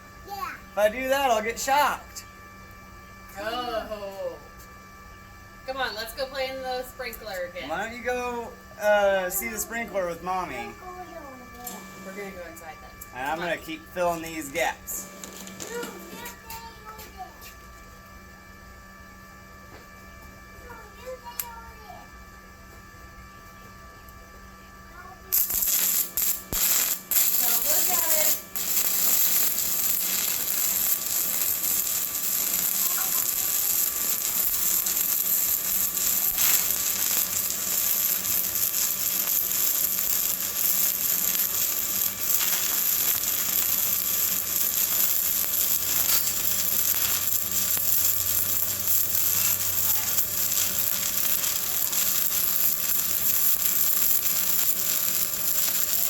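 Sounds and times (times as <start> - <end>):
welding arc crackling hiss: 0.8 - 2.2, 5.7 - 10.7, 11.5 - 16.6, 25.3 - 56.0.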